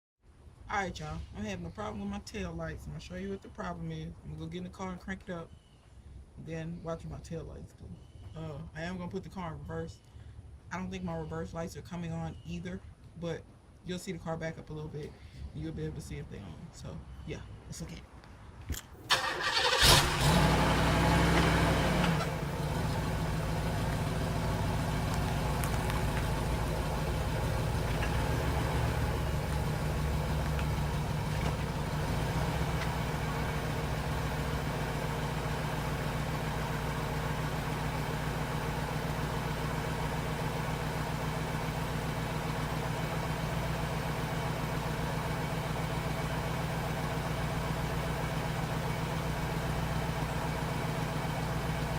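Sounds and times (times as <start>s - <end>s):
car engine starting and idling: 19.0s - 51.9s.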